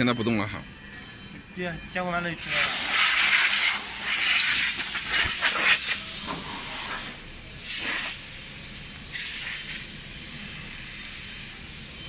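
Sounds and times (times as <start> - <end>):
hiss of rushing air: 2.4 - 12.0.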